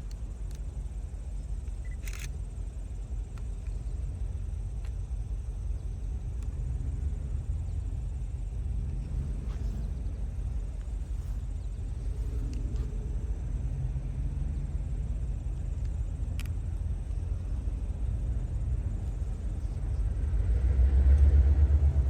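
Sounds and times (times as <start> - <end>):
low outdoor rumble: 0.0 - 22.0
sharp click: 1.6 - 2.4.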